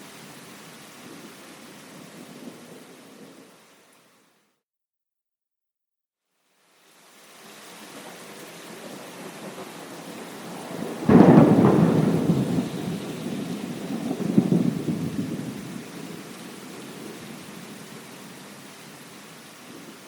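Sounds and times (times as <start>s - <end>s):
steady rain: 0.0s - 4.6s, 6.3s - 20.0s
thunder rumbling: 8.7s - 18.1s.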